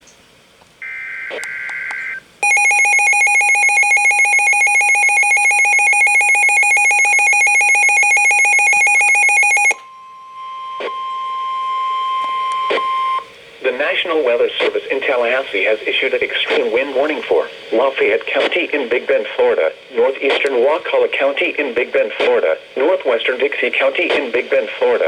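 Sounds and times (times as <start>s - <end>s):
clicks: 0.6s - 2.2s.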